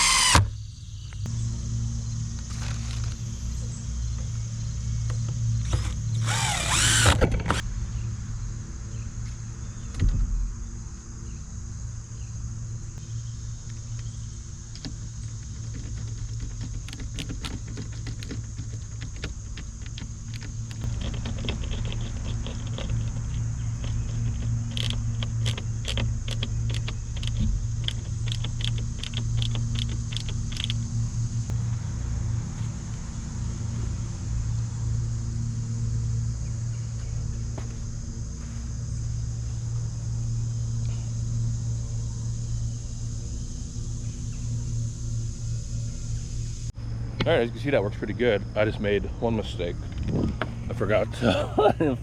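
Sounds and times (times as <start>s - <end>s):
steady low hum: 0.0s - 52.0s
sharp clicks and metallic ticks: 14.7s - 30.9s.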